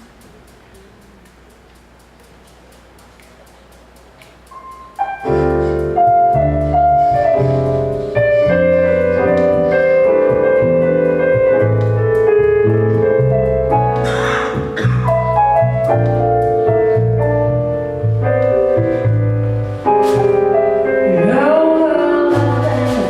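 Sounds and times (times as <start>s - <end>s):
slow jazz piano: 0.0s - 23.0s
bass line: 5.0s - 23.0s.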